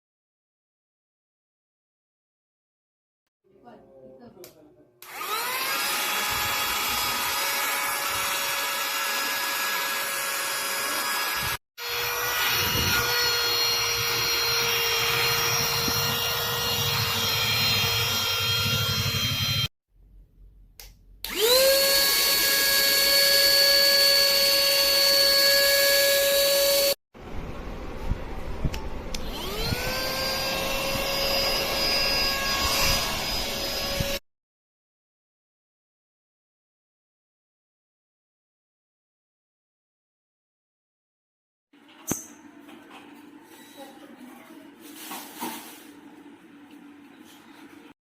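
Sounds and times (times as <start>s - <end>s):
cordless vacuum cleaner whining: 5.0s - 19.7s, 21.2s - 27.0s, 28.7s - 34.2s.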